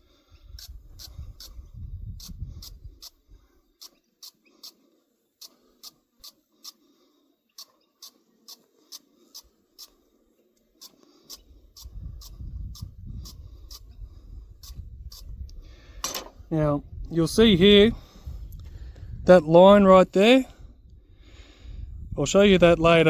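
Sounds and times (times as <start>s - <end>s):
sharp scratching strokes on threads: 2.2s - 6.9s, 7.6s - 10.0s, 10.8s - 14.0s.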